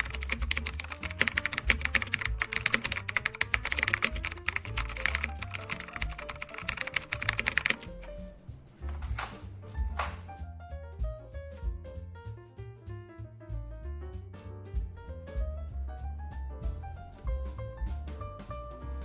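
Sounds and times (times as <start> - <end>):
mechanical keyboard clicking: 0.0 - 8.2
background music: 0.0 - 19.0.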